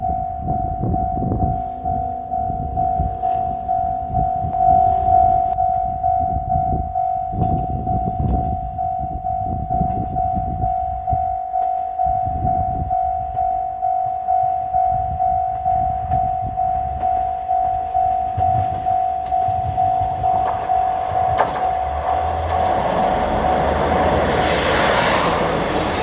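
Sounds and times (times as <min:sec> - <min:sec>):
level-crossing warning bell: 0:00.0 - 0:26.0
diesel train rumbling: 0:15.5 - 0:26.0.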